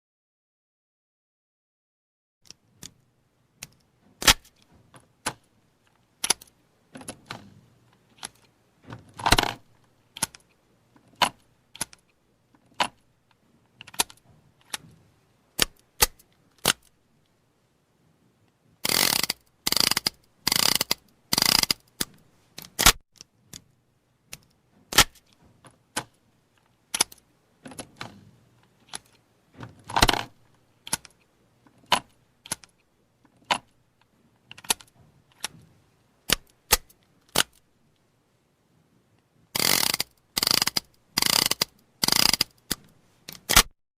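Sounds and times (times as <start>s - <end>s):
revolver metallic clicks: 18.8s - 23.0s, 39.6s - 43.7s.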